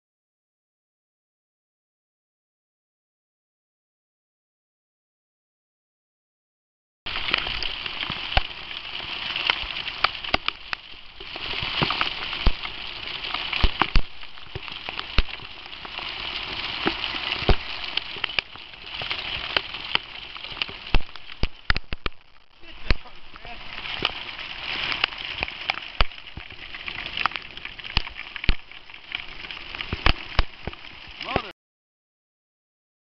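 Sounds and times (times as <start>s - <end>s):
hail and rain hissing: 7.1s - 31.5s
hailstones clicking on hard surfaces: 7.1s - 31.5s.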